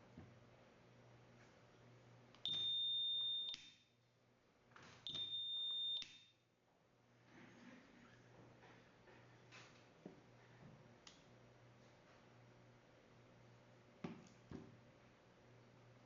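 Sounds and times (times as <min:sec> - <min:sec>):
click: 0:11.0 - 0:11.2.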